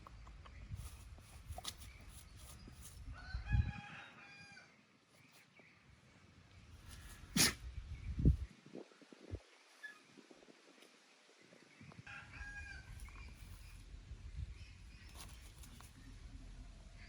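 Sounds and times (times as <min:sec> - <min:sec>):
rooster crowing: 0:03.2 - 0:04.7.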